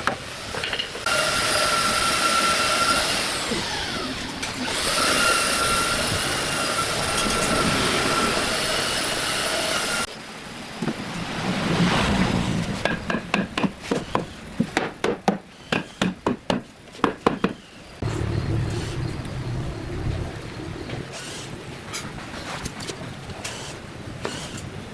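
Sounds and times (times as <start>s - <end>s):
woodworking power tool whining: 0.4s - 10.1s
low rumble: 18.0s - 22.5s.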